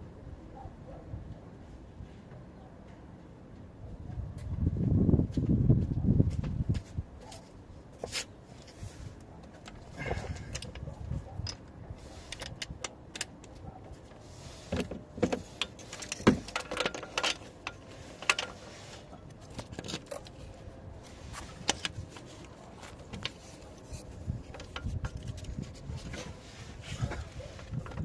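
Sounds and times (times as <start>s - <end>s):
metal tools clinking: 15.6s - 18.7s.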